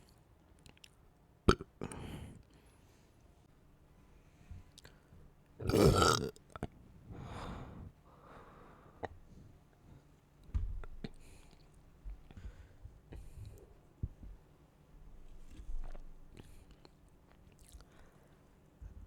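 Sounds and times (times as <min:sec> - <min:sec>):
soft noisy sound: 0:00.0 - 0:19.0
loud burp: 0:01.5 - 0:01.7, 0:05.6 - 0:06.4.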